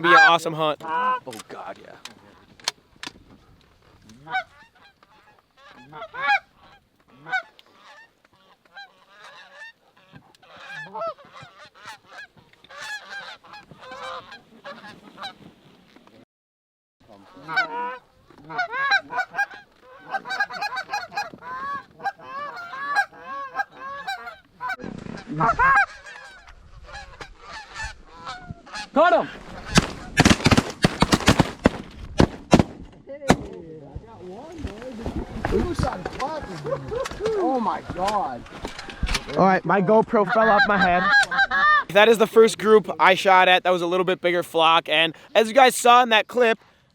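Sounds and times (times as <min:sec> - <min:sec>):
geese honking: 0:00.0 - 0:01.3, 0:41.9 - 0:46.6.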